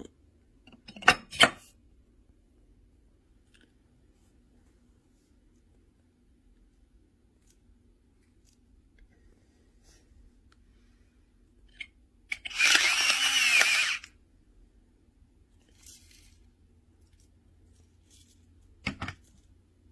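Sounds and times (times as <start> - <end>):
electric grinder motor whirring: 12.4 - 14.1.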